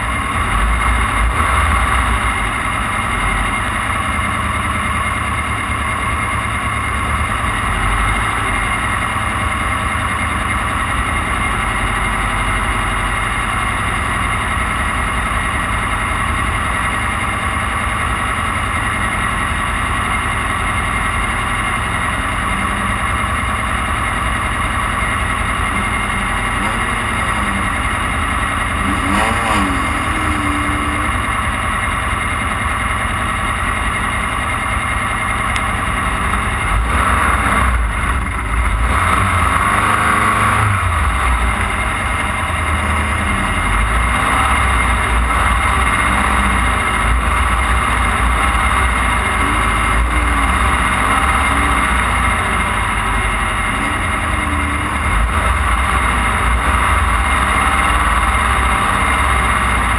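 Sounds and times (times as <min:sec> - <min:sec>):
race car engine running hard: 0:00.0 - 0:59.9.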